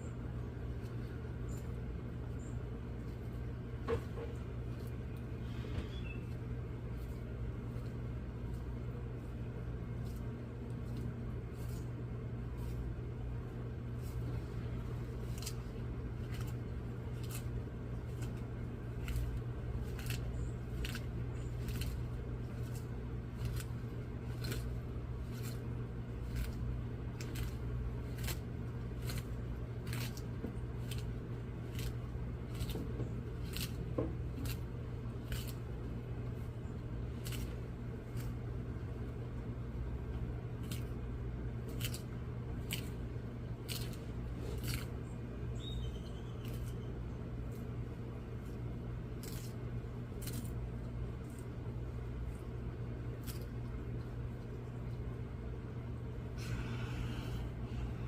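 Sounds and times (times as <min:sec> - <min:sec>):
low hum: 0:00.0 - 0:58.0
animal crunching food: 0:00.1 - 0:58.0.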